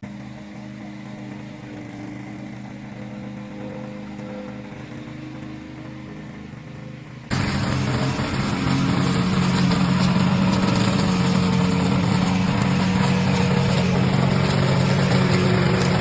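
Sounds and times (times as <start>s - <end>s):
small lawn mower engine running: 0.0s - 16.0s.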